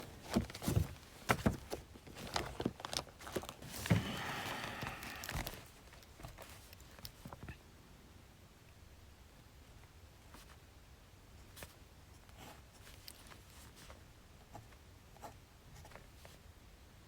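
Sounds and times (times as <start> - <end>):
paper rustling: 0.0 - 7.0.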